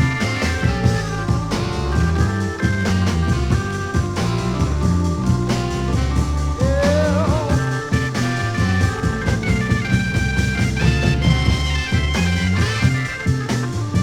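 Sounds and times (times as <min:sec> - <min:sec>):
electric blues band playing: 0:00.0 - 0:14.0.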